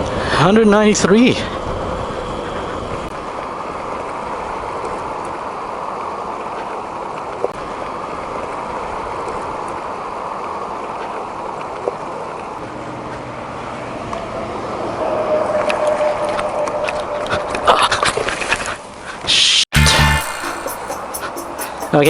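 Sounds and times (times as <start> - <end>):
wind rushing: 13.6 - 19.6.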